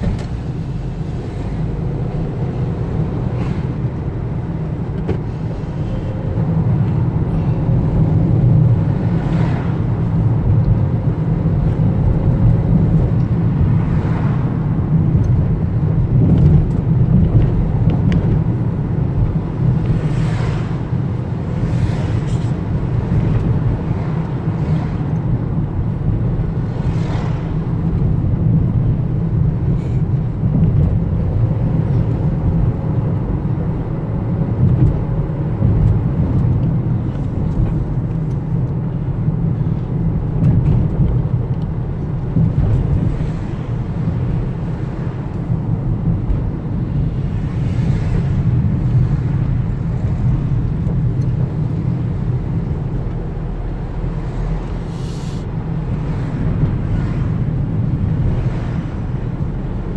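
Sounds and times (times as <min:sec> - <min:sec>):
road vehicle rumble: 0:00.0 - 0:59.9
faint brief hissing: 0:54.9 - 0:55.5.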